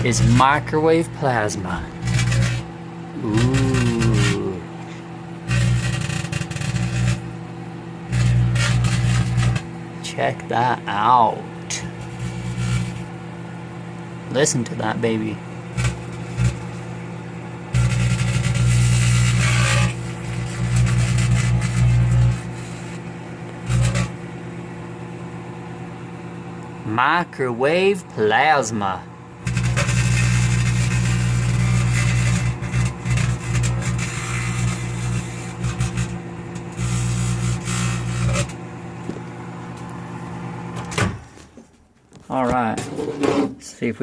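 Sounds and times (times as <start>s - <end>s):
plasma buzzing and crackling: 0.0s - 9.8s, 11.7s - 13.2s, 14.5s - 24.8s, 29.4s - 39.2s
microwave oven hum: 0.0s - 43.3s.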